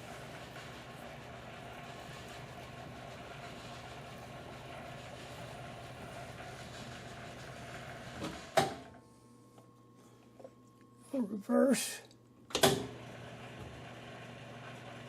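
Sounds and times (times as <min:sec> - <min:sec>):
faint hum: 0:08.9 - 0:12.5.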